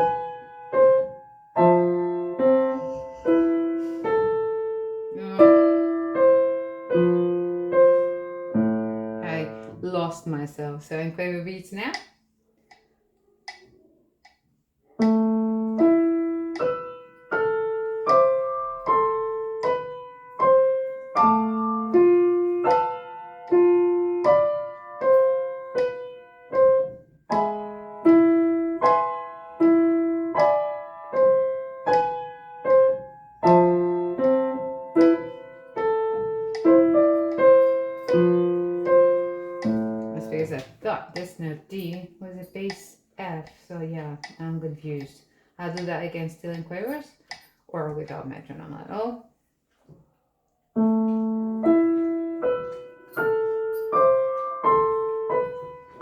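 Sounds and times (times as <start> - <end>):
slow piano notes and chords: 0.0 - 9.9, 14.9 - 40.9, 50.7 - 56.0.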